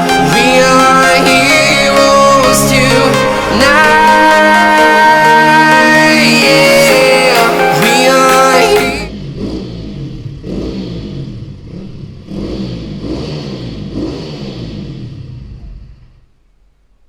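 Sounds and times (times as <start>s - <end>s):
music with singing: 0.0s - 9.1s
motocross bike engine revving: 9.1s - 15.6s.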